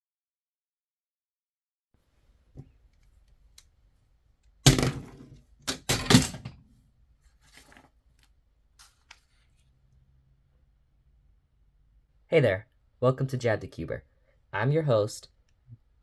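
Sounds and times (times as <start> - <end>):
loud clattering thump: 4.7 - 6.6.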